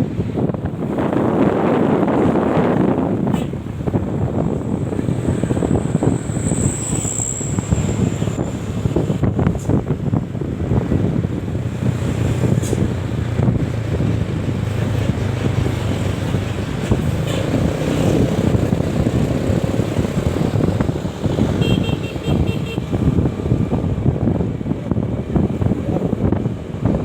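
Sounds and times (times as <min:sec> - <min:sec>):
bus engine humming: 0:00.0 - 0:27.0
wind buffeting microphone: 0:00.0 - 0:27.0.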